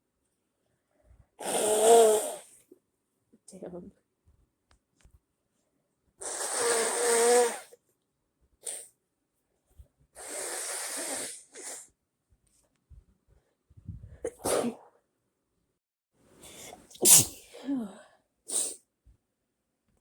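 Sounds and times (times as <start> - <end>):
person sneezing: 14.2 - 14.9, 16.6 - 17.7.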